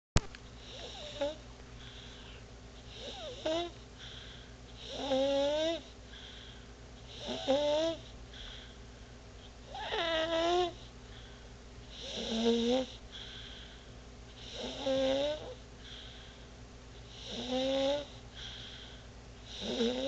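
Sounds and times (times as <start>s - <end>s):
soft breathing: 0.6s - 4.9s, 5.7s - 12.2s, 13.0s - 17.2s, 18.0s - 19.7s
baby snoring: 0.7s - 1.4s, 2.9s - 3.8s, 4.8s - 5.9s, 7.1s - 8.1s, 9.7s - 10.9s, 12.0s - 13.0s, 14.4s - 15.6s, 17.2s - 18.6s, 19.5s - 20.0s.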